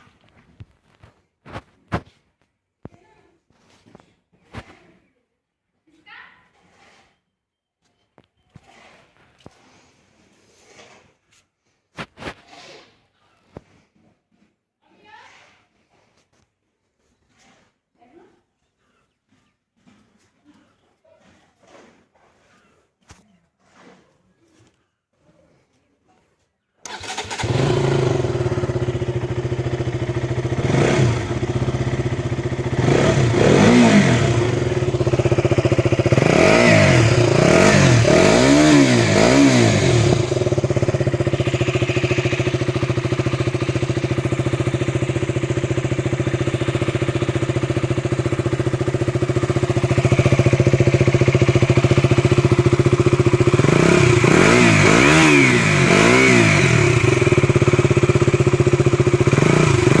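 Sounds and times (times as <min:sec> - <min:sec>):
motorcycle engine revving and idling: 0:26.8 - 1:00.0.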